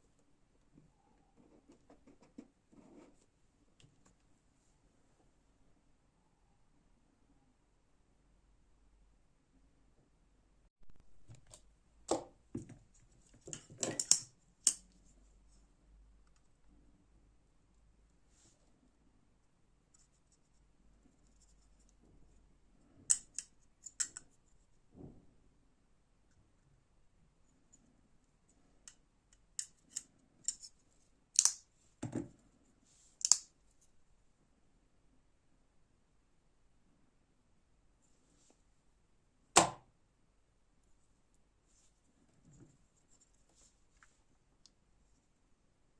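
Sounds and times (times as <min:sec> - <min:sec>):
folding knife clicking: 0:31.4 - 0:31.6, 0:33.2 - 0:33.5.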